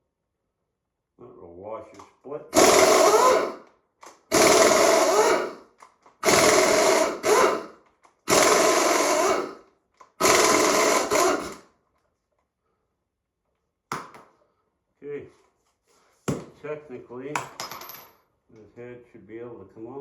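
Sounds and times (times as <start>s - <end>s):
cordless power tool whining: 2.6s - 3.7s, 4.3s - 11.6s.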